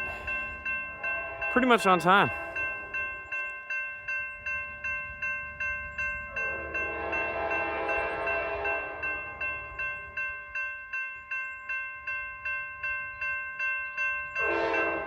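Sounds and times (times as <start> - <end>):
crossing bell ringing: 0.0 - 15.0
train horn: 6.4 - 9.3, 14.4 - 15.0.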